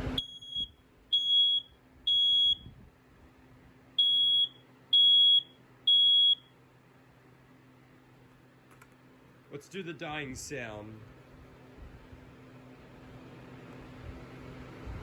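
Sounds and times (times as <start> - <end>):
smoke alarm high-pitched beeps: 0.2 - 2.7, 4.0 - 6.5.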